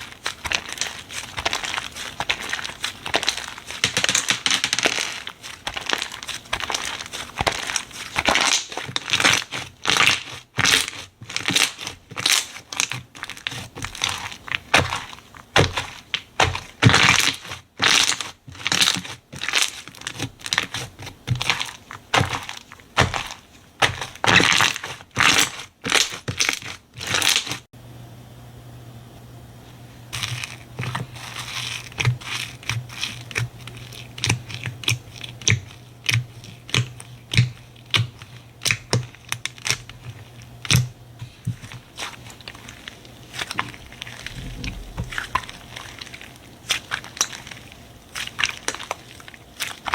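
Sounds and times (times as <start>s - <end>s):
slime crunching and crackling: 0.0s - 27.7s, 30.1s - 49.9s
steady low hum: 27.8s - 49.9s.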